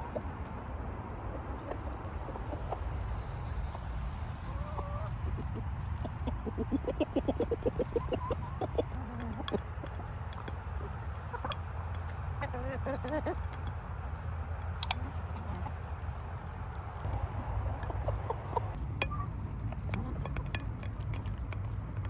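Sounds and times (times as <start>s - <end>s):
chickens clucking: 0.0s - 20.6s
low rumble: 16.8s - 20.4s.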